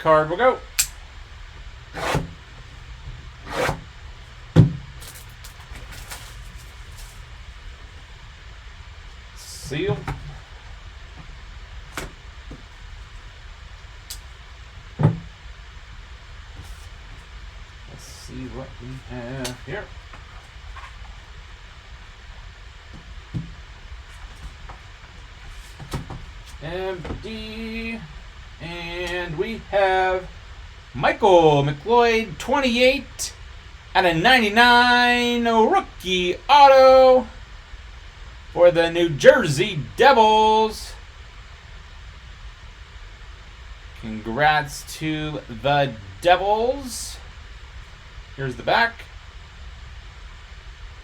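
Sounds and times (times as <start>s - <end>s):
steady low hum: 0.0s - 51.0s
packaging rustling: 4.8s - 7.4s.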